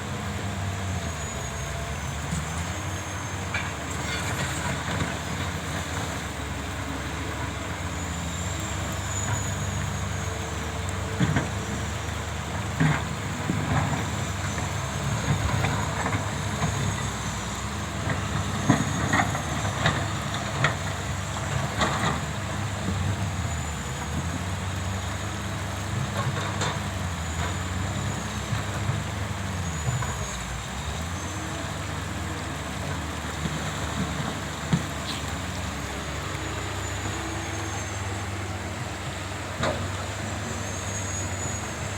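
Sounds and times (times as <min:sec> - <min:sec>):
excavator diesel engines running: 0:00.0 - 0:41.9.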